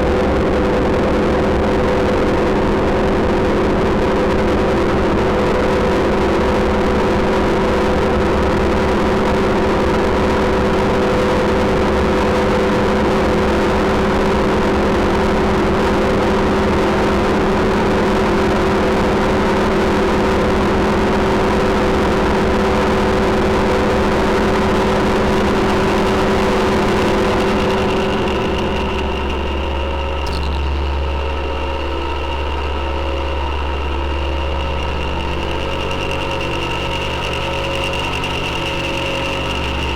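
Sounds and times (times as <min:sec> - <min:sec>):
synthesizer drone: 0:21.5 - 0:39.9.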